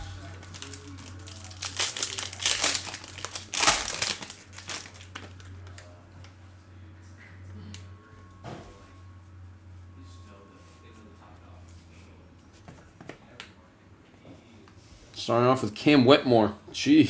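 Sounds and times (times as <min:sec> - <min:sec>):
plastic wrapping tearing and crinkling: 0:00.0 - 0:05.9
steady low hum: 0:00.0 - 0:17.0.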